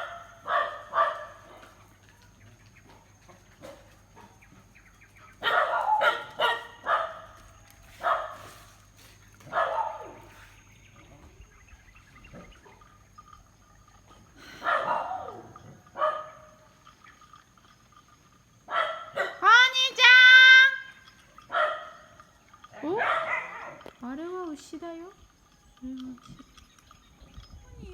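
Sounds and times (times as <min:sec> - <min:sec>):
dog barking: 0:00.0 - 0:01.8, 0:05.4 - 0:07.4, 0:08.0 - 0:08.7, 0:09.4 - 0:10.4, 0:14.6 - 0:16.6, 0:18.7 - 0:19.4, 0:21.5 - 0:22.0, 0:22.8 - 0:23.9.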